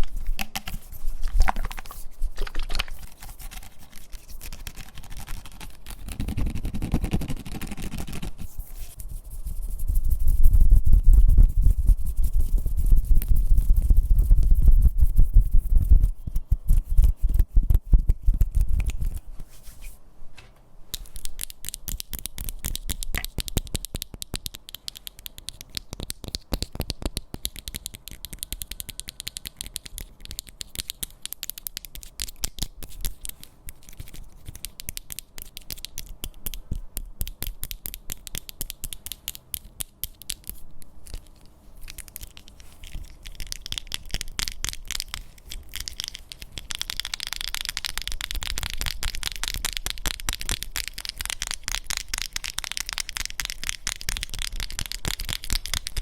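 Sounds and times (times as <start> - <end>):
tapping on objects: 0.0 - 3.1
scratching on objects: 0.0 - 23.8, 37.4 - 56.0.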